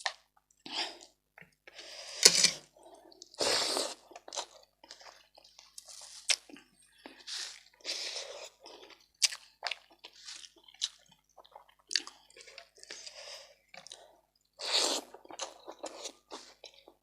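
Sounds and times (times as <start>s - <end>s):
close chewing of food: 0.0s - 17.0s.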